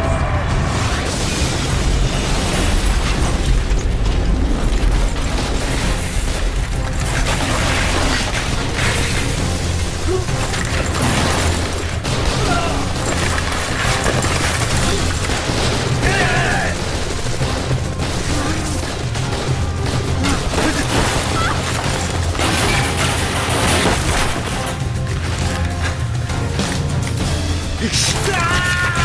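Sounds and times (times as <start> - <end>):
dramatic score music: 0.0 - 29.0
rapid gunfire and impacts: 0.0 - 29.0.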